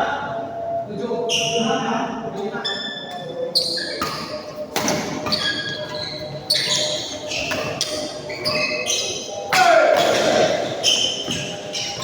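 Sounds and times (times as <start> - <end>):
shoes squeaking on court floor: 1.3 - 1.8, 2.6 - 12.0
racket hitting shuttlecock: 4.0 - 5.7.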